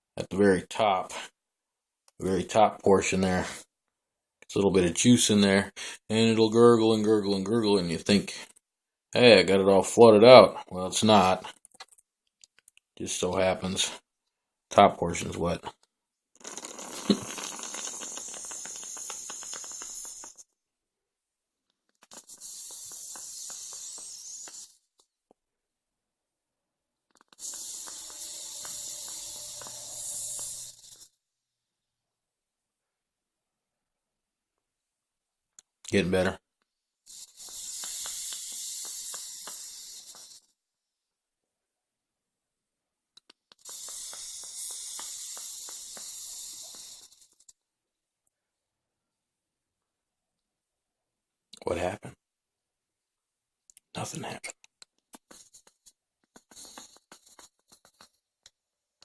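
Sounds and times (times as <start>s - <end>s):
liquid crackling on hot coil: 16.4s - 20.5s, 21.9s - 24.8s, 27.1s - 31.1s, 37.1s - 40.5s, 43.5s - 47.5s
air hissing through vaporizer: 16.4s - 20.6s, 21.9s - 24.9s, 27.1s - 31.2s, 37.1s - 40.6s, 43.2s - 47.6s, 55.2s - 58.5s.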